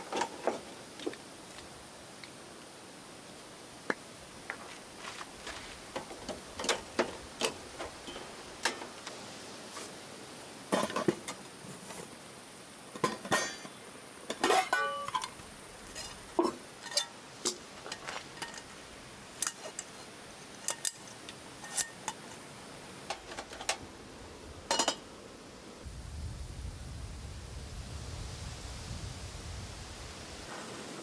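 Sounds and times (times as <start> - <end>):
tableware knocking and clinking: 13.0 - 13.7, 14.3 - 15.3, 24.7 - 25.0.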